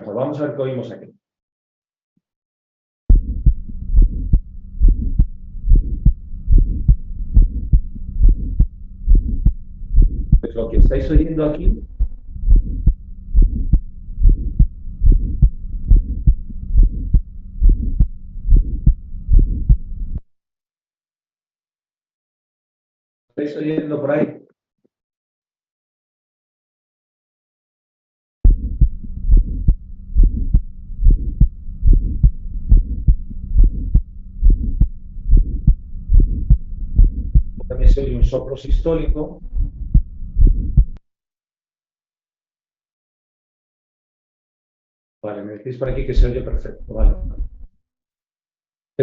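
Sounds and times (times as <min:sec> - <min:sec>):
heartbeat with murmur: 0:03.1 - 0:20.0, 0:28.5 - 0:41.0, 0:45.9 - 0:47.7
faint steady hum: 0:03.1 - 0:20.2, 0:28.6 - 0:41.0.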